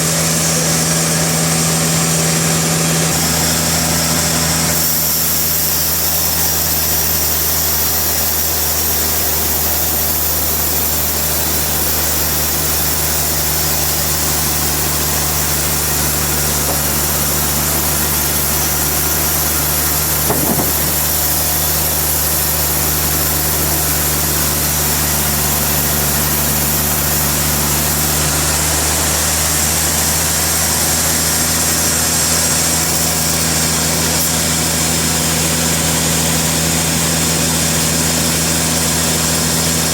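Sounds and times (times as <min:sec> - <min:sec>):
sawmill engine drone: 0:00.0 - 0:39.9
brief knock: 0:20.3 - 0:21.0.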